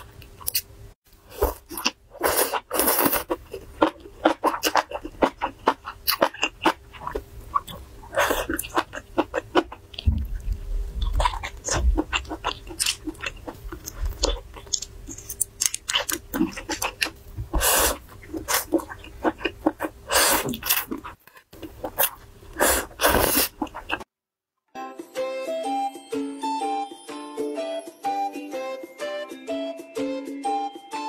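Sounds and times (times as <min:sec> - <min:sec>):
person chewing food: 0:01.3 - 0:24.1.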